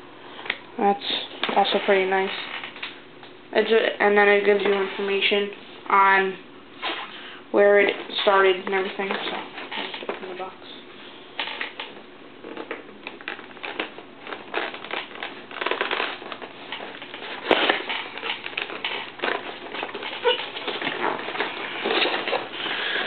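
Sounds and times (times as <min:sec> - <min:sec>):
cardboard rustling and crinkling: 0:11.4 - 0:23.0.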